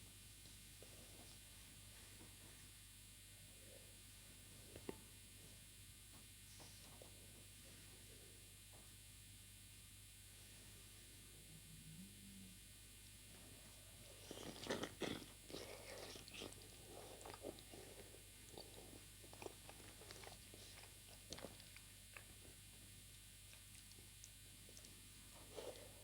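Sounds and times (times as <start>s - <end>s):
person biting and chewing: 14.2s - 22.3s.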